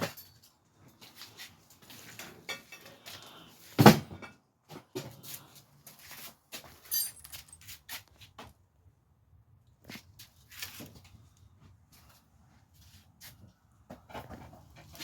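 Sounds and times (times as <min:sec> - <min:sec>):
objects clattering: 0:00.0 - 0:05.3.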